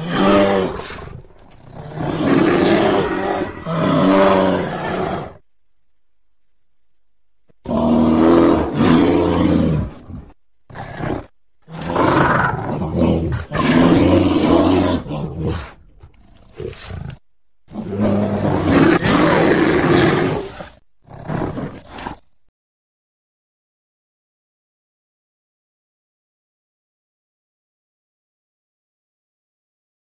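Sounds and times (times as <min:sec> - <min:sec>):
bear roaring and growling: 0:00.0 - 0:05.4, 0:07.6 - 0:22.2.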